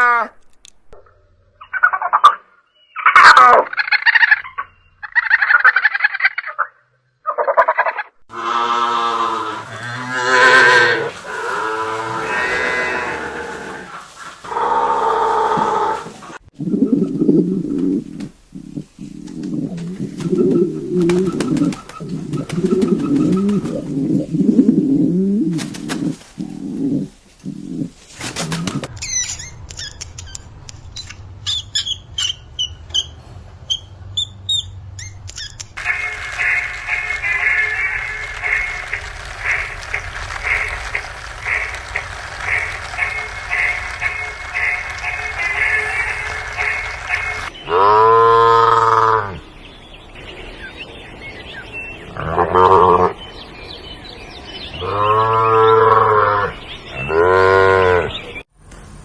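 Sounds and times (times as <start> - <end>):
cow mooing: 8.3 - 13.9, 47.7 - 49.4, 54.8 - 58.1
sharp clicks: 28.4 - 31.2, 35.0 - 35.8.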